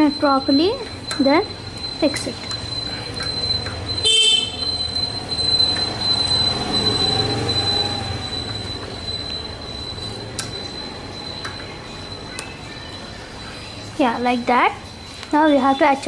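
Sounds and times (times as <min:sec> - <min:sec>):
high metallic squeal: 0:02.6 - 0:13.9.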